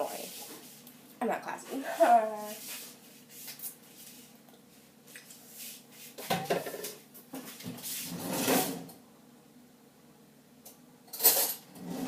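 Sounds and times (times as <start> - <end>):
metal cutlery clinking: 11.1 - 11.6.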